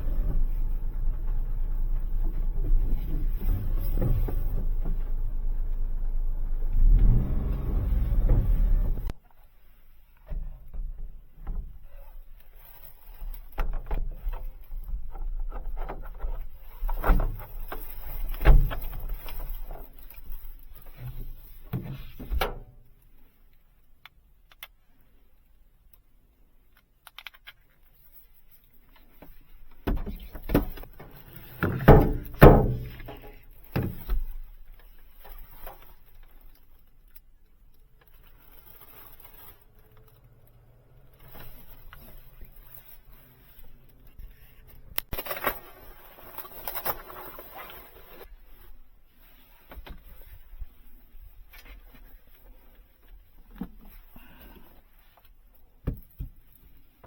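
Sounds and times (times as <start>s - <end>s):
objects thunking and knocking: 0.0s - 6.2s, 29.8s - 34.5s.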